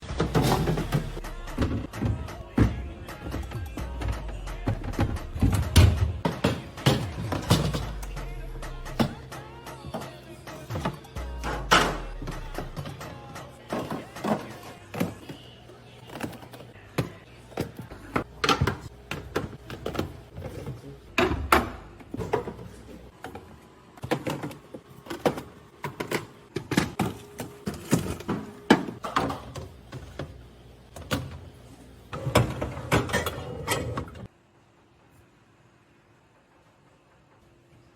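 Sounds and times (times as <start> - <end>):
containers knocking and thunking: 0.0 - 8.1, 9.0 - 15.4.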